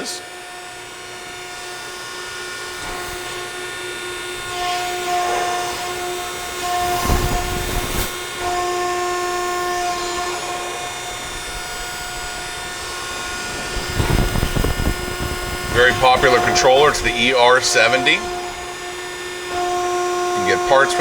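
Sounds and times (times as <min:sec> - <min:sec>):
hydraulic pump whine: 0:00.0 - 0:21.0.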